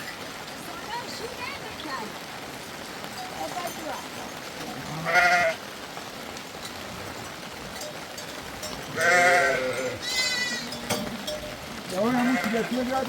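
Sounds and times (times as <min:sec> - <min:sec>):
livestock bleating: 0:04.8 - 0:05.6, 0:08.9 - 0:11.0, 0:11.9 - 0:13.0.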